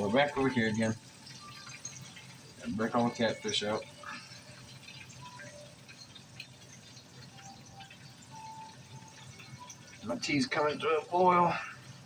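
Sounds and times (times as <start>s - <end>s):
fish frying in oil: 0.0s - 12.0s
small ticks: 3.8s - 10.1s.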